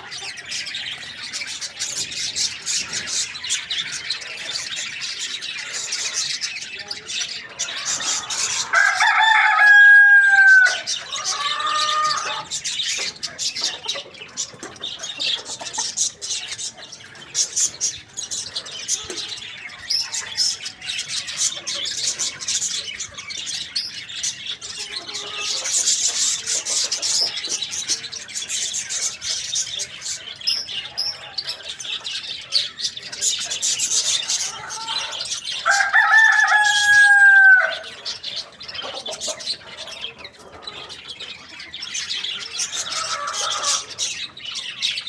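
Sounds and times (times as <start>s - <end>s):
small birds chirping: 0.0s - 45.0s
rooster crowing: 8.1s - 12.5s, 34.6s - 38.0s.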